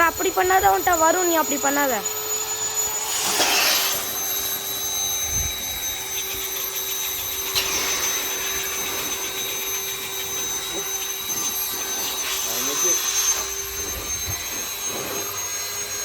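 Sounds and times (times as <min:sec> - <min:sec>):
electric air pump whining: 0:00.0 - 0:16.0.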